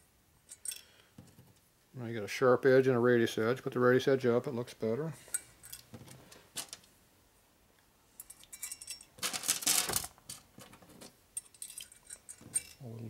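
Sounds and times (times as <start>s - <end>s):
metal nuts and washers clinking: 0.4s - 1.4s, 5.2s - 6.9s, 8.2s - 13.0s.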